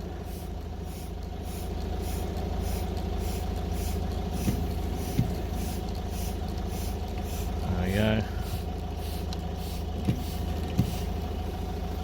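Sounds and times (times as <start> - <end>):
diesel engine idling: 0.0 - 12.0
windscreen wipers swishing: 3.9 - 11.2.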